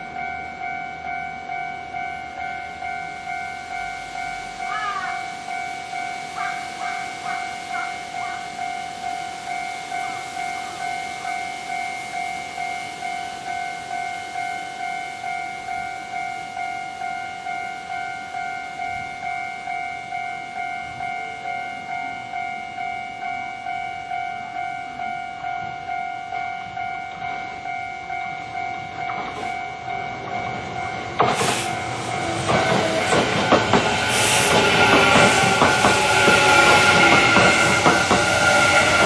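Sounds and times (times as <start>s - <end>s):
electric train passing: 0.0s - 39.0s
level crossing warning bell: 0.0s - 39.0s.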